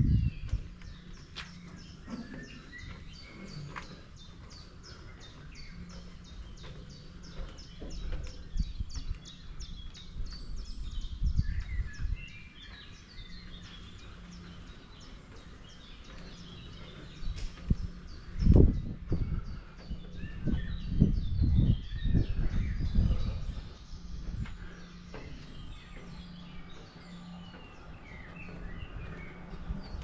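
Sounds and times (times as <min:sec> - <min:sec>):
footsteps on a trail: 0:00.1 - 0:30.0
other birds calling: 0:00.4 - 0:30.0.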